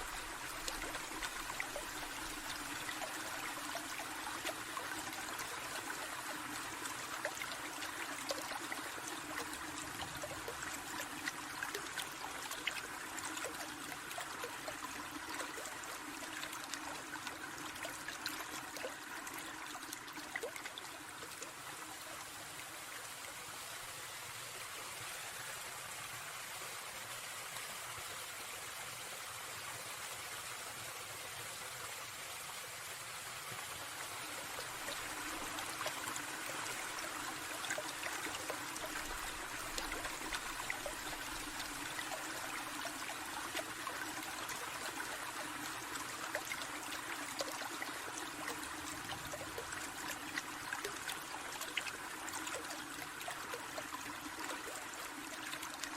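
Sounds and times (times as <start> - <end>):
stream trickling and babbling: 0.0 - 55.9.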